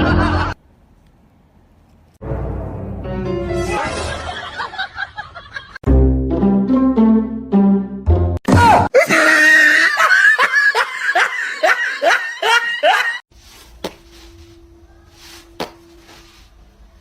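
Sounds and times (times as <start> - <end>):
person laughing hard: 0.0 - 0.6, 8.9 - 13.2.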